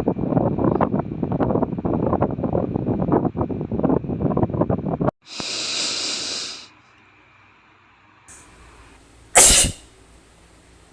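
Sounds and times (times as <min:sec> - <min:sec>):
wind noise on microphone: 0:00.0 - 0:05.1
hissing breath: 0:05.2 - 0:06.8, 0:09.4 - 0:09.9
man sneezing: 0:09.4 - 0:09.8.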